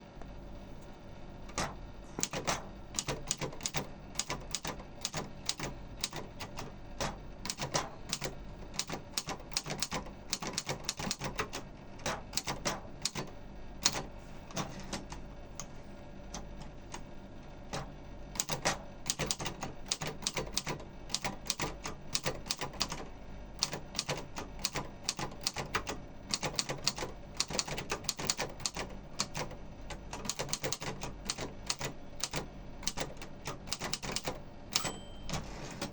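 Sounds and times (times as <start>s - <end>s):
manual typewriter key strikes: 1.5s - 15.1s, 17.7s - 23.0s, 23.6s - 35.9s.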